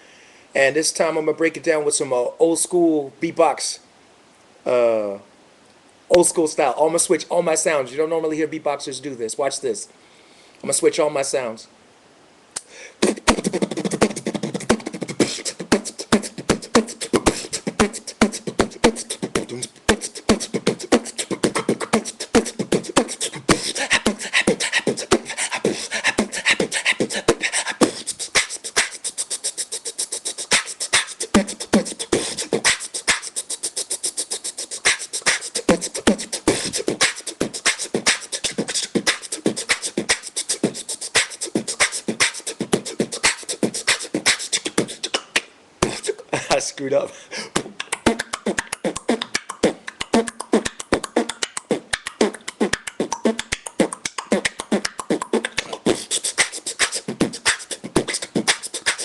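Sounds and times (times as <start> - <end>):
man beatboxing: 12.6 - 59.0.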